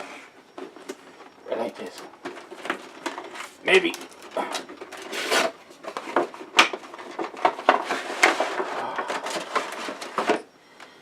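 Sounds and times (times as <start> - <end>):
packaging scraping and rubbing: 2.2 - 10.5.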